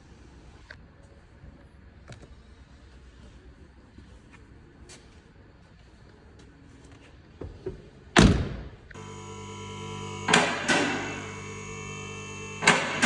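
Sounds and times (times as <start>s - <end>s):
multi-tone drone: 9.0s - 13.0s.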